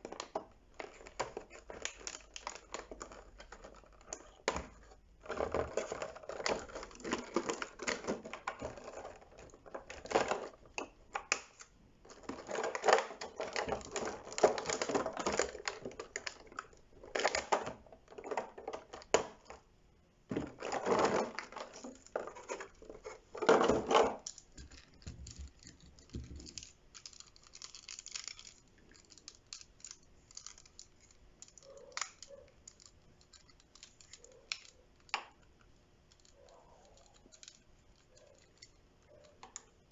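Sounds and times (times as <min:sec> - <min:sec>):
plastic packaging rustling and crinkling: 0:00.0 - 0:19.6, 0:20.3 - 0:35.2.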